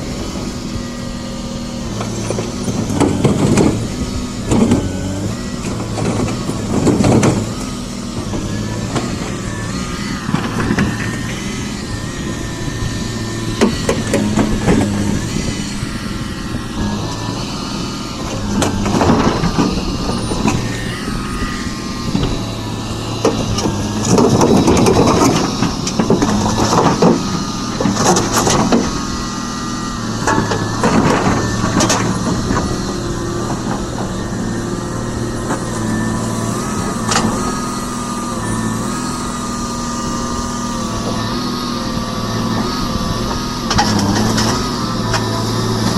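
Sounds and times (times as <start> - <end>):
excavator diesel engine running: 0.0 - 45.9
machine whine shifting pitch: 0.0 - 45.9
noisy clattering: 5.6 - 37.8.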